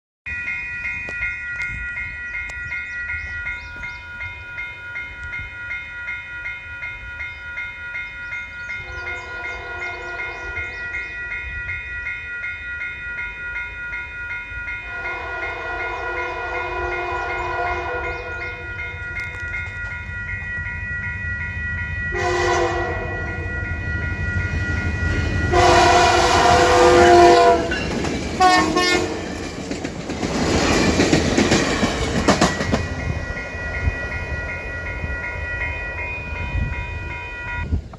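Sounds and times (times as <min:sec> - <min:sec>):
steady high ringing tone: 0:00.3 - 0:29.8, 0:30.6 - 0:37.9
low rumble of train: 0:00.3 - 0:37.9
locomotive horn blasts: 0:08.8 - 0:10.8, 0:14.9 - 0:18.8, 0:22.1 - 0:23.8, 0:25.4 - 0:29.4.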